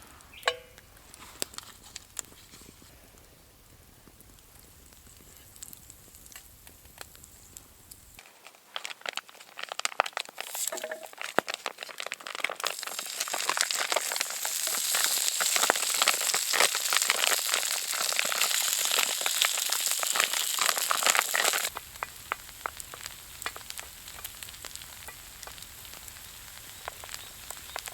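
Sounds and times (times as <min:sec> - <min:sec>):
food sizzling in a pan: 0:10.3 - 0:27.9.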